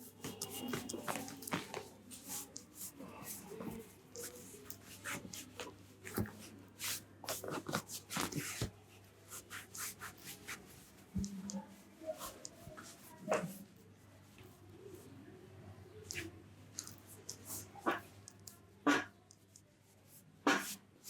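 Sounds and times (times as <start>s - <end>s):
hands rubbing hair and scalp: 0.0s - 5.6s, 6.8s - 8.7s, 9.3s - 10.8s.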